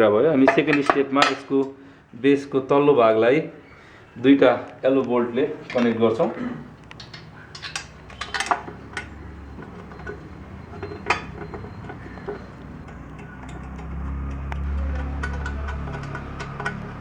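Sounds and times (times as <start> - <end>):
metal parts clinking and knocking: 5.6 - 17.0
sharp clicks: 6.7 - 17.0.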